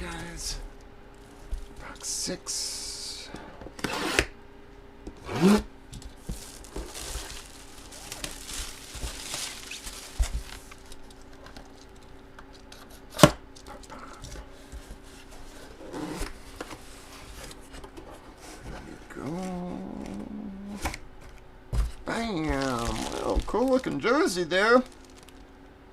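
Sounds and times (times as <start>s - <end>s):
faint steady hum: 0.0s - 25.9s
packaging crinkling and tearing: 6.0s - 12.7s, 22.0s - 25.6s.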